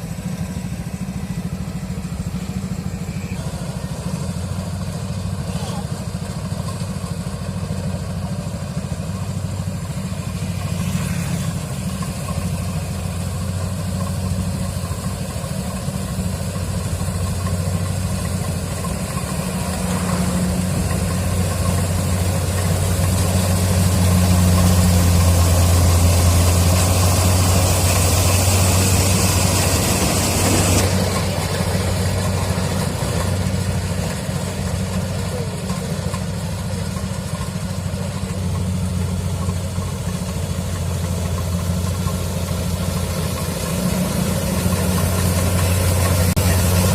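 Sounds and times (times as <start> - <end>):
diesel engine humming: 0.0 - 46.9
hiss: 9.0 - 36.3, 38.9 - 46.9.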